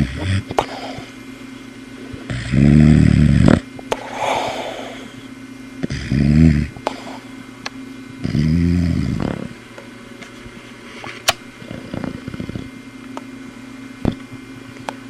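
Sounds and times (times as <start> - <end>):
dog snoring loudly: 0.0 - 1.1, 2.2 - 5.2, 5.8 - 7.2, 8.2 - 9.6, 11.6 - 12.7
soft breath: 4.0 - 5.3.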